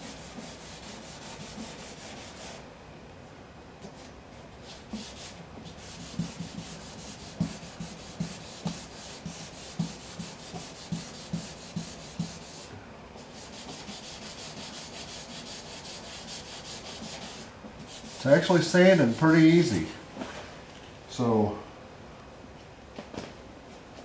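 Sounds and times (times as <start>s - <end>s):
sandpaper rubbing on paint: 0.0s - 2.6s, 4.7s - 19.8s.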